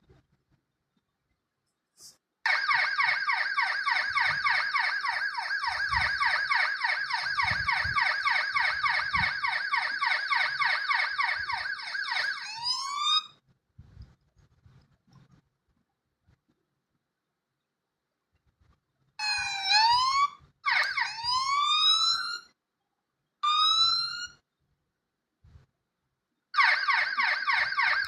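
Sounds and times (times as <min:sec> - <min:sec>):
ambulance siren yelping: 0:02.5 - 0:13.4, 0:19.2 - 0:22.5, 0:23.4 - 0:24.4, 0:26.6 - 0:28.0.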